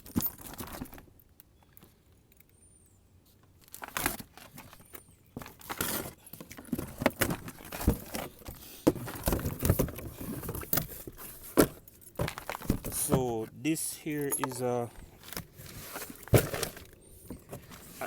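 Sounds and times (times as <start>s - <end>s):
knocks and light clinks: 0.0s - 18.0s
packaging rustling: 5.4s - 13.5s, 14.4s - 18.0s.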